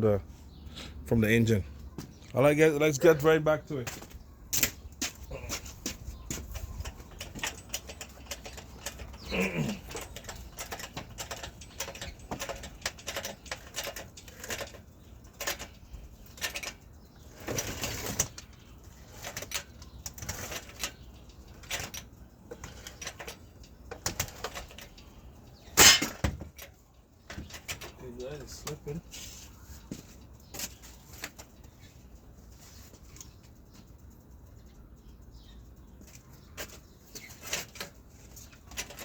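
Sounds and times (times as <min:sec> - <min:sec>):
metal tools clicking and knocking: 0:03.8 - 0:28.9, 0:35.7 - 0:39.0
loud metal clank: 0:25.8 - 0:26.4.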